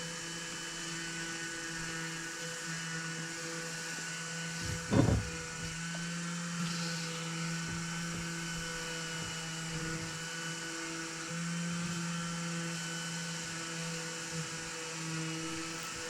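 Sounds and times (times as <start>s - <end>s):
small electric motor humming: 0.0s - 16.0s
faint knocks: 4.6s - 6.0s.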